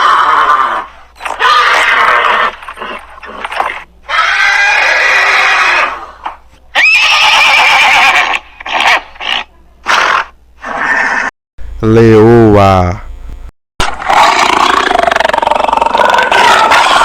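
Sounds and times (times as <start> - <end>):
horse neighing: 6.8 - 9.0.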